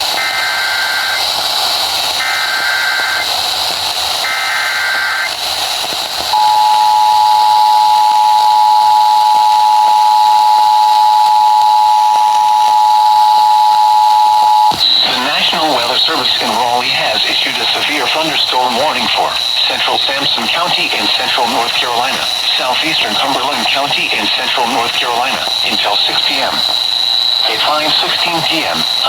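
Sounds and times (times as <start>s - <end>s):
radio hiss: 0.0s - 29.0s
two-tone attention signal: 6.4s - 15.2s.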